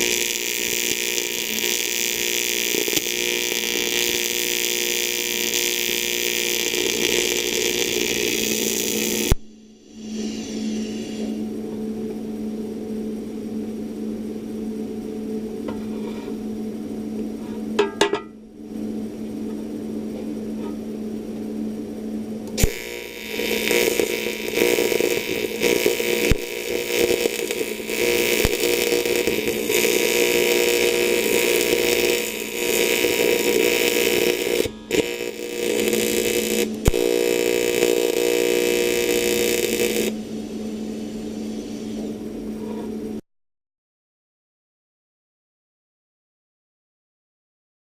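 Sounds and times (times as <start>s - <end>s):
welding arc buzzing and crackling: 0.0s - 11.4s, 22.4s - 42.3s
welder humming: 0.0s - 21.6s, 22.4s - 43.2s.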